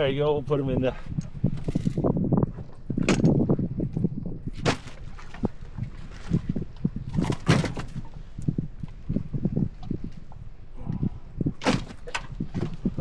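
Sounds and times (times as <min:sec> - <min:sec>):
knocks and clangs in a boat: 0:01.0 - 0:13.0
sharp bangs: 0:04.6 - 0:05.0.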